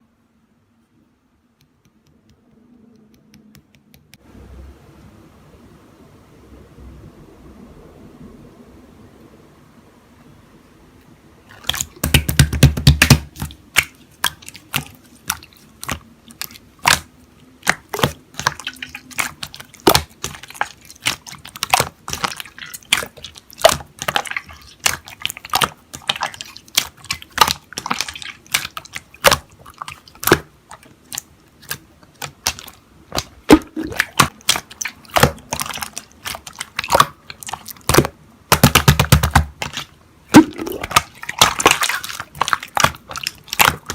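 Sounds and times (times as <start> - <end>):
slime squishing: 11.4 - 43.9.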